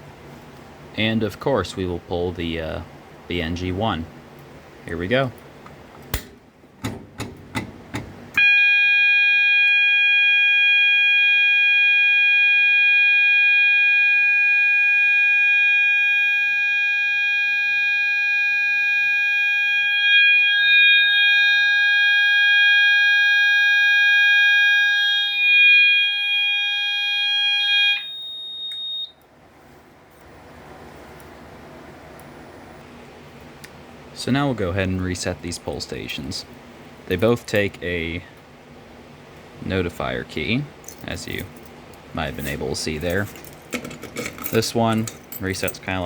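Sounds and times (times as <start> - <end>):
fire alarm continuous tone: 8.4 - 29.3
fire alarm pull station clicks: 27.9 - 29.2.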